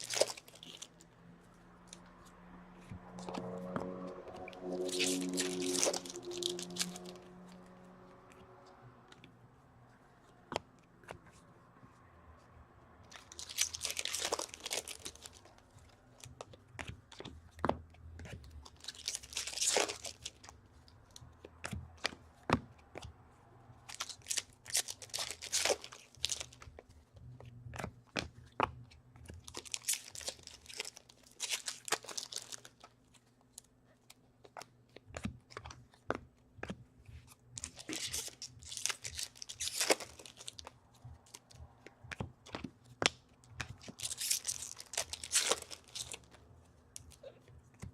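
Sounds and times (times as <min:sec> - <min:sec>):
wrappers tearing and crinkling: 0:00.0 - 0:01.0, 0:03.2 - 0:07.6, 0:13.1 - 0:15.6, 0:18.7 - 0:20.5, 0:23.9 - 0:26.6, 0:29.4 - 0:32.9, 0:37.6 - 0:40.7, 0:43.8 - 0:46.3
cards clicking and tapping: 0:02.8 - 0:07.2, 0:34.4 - 0:46.4.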